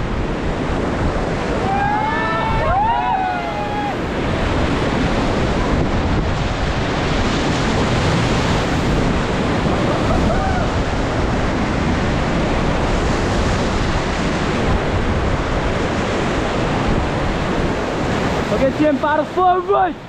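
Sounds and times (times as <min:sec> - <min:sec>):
wind buffeting microphone: 0:00.0 - 0:19.2
river whitewater rushing: 0:00.0 - 0:20.0
people shouting: 0:01.6 - 0:04.1.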